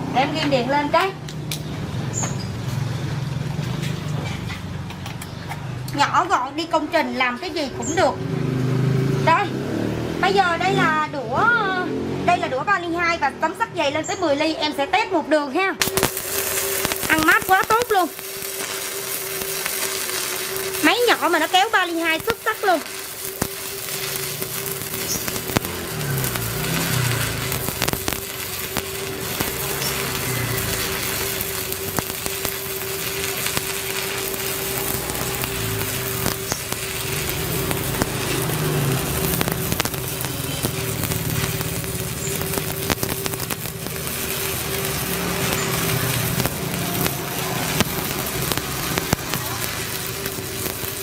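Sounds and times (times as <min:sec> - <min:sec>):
welding arc crackling and sizzling: 0:00.0 - 0:13.9, 0:15.5 - 0:51.0
constant hum: 0:14.6 - 0:51.0.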